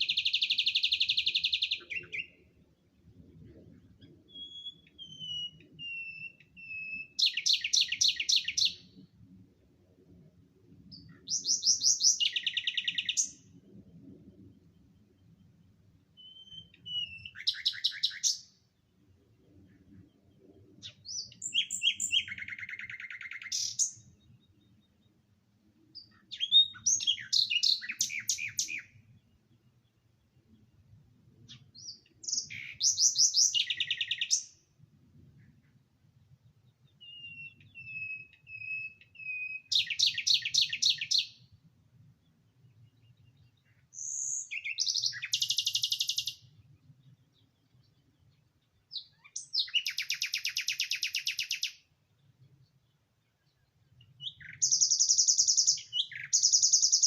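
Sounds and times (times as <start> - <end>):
songbird trilling: 0.0 - 2.4, 4.3 - 8.9, 11.0 - 13.4, 16.2 - 18.5, 20.8 - 24.4, 26.0 - 29.0, 31.5 - 34.6, 37.0 - 41.5, 43.6 - 46.6, 48.9 - 51.9, 54.0 - 57.0.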